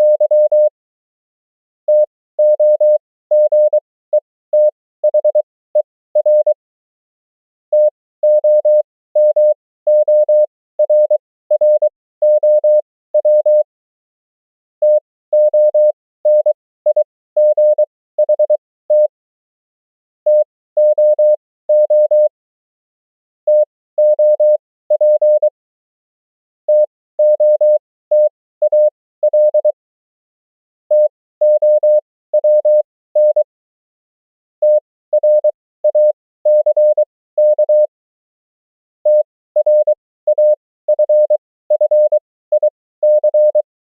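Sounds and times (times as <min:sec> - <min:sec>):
morse code tone: 0:34.6 - 0:37.9, 0:39.1 - 0:43.6.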